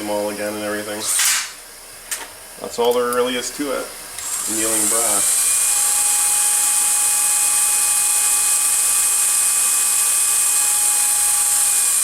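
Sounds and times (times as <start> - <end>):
power drill motor whine: 4.1 - 12.0.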